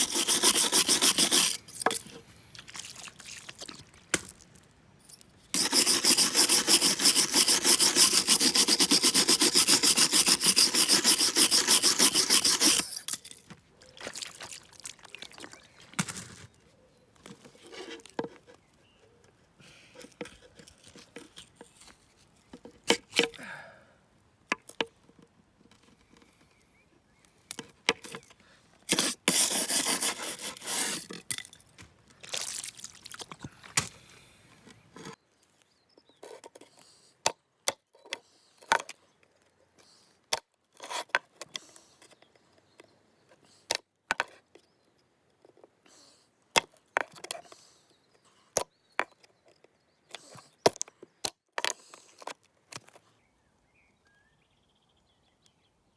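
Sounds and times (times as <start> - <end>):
harsh metal scraping: 0.0 - 1.8, 5.6 - 13.0.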